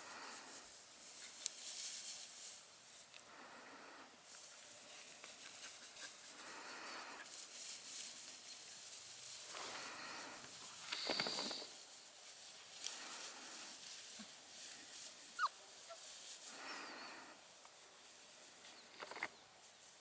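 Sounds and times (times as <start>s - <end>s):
puppies scuffling in grass: 0.0s - 3.2s, 4.2s - 20.0s
puppy whining: 15.3s - 16.1s.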